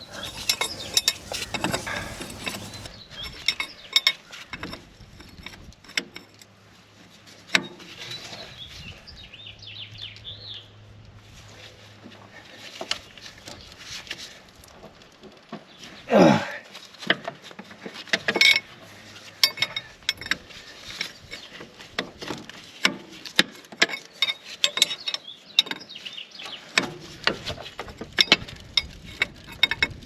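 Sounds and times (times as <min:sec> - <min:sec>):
wrenches clinking on steel fittings: 0:00.0 - 0:02.9.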